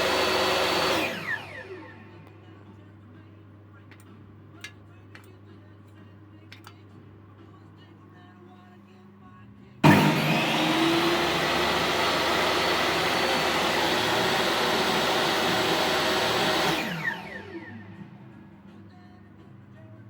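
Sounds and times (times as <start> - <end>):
table saw running: 0.0 - 2.1, 9.8 - 18.3
saw blade spinning down whine: 9.8 - 18.4.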